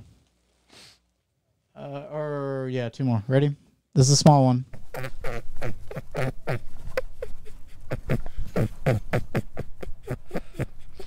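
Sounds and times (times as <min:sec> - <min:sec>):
rabbit calling: 0:04.8 - 0:09.4.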